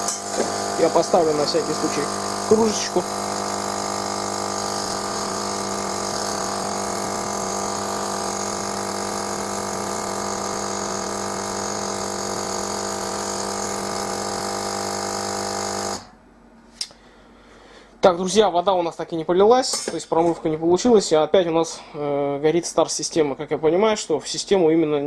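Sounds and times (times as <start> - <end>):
coffee machine pump humming: 0.0 - 16.2.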